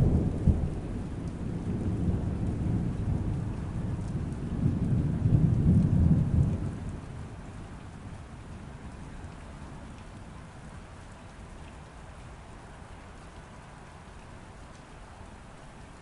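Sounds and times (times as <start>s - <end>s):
thunder rumbling: 0.0s - 8.0s
steady rain falling: 0.0s - 16.0s.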